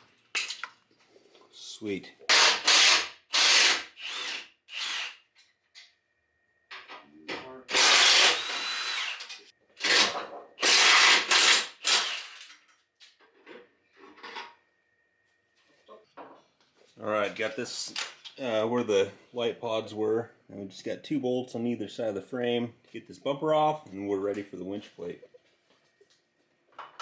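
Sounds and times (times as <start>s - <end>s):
cordless drill bursts: 2.3s - 5.2s, 7.7s - 12.5s.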